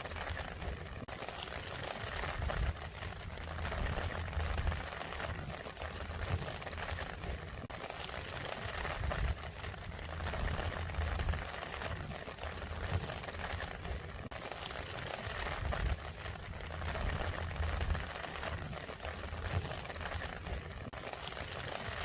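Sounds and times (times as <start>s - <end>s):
rain falling: 0.0s - 22.0s
low rumble: 3.3s - 4.9s, 9.9s - 11.5s, 15.6s - 18.1s.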